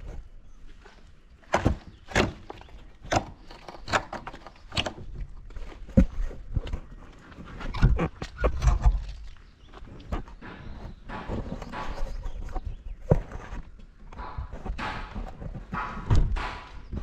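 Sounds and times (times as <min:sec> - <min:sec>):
wooden knocks and thuds: 0:07.7 - 0:17.0.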